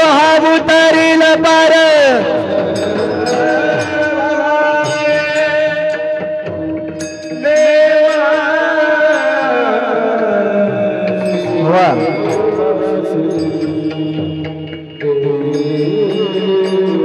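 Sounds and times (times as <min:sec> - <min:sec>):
instrumental accompaniment: 0:00.0 - 0:17.0
light percussion strokes: 0:10.7 - 0:17.0.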